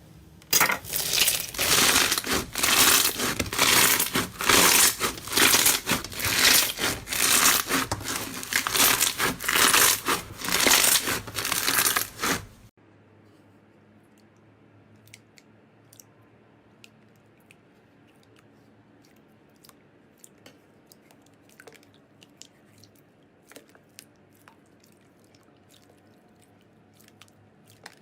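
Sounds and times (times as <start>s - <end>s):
slime clicks and crackles: 0.8s - 12.5s.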